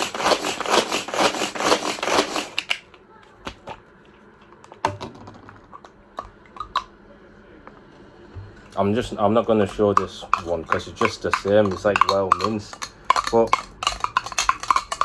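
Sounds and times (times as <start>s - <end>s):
fast rasping strokes: 0.0s - 2.7s, 9.4s - 15.0s.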